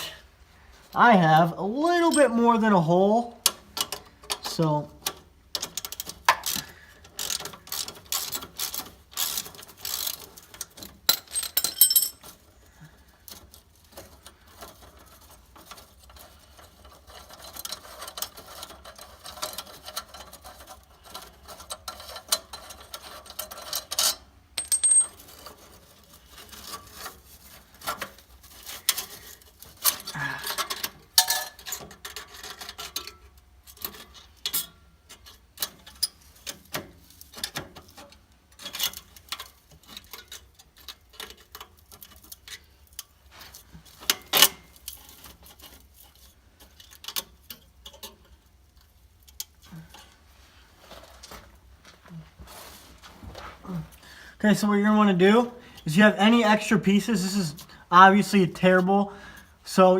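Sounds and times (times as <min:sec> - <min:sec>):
tools and metal parts clinking: 0:02.0 - 0:02.6, 0:03.7 - 0:12.5, 0:13.3 - 0:50.1.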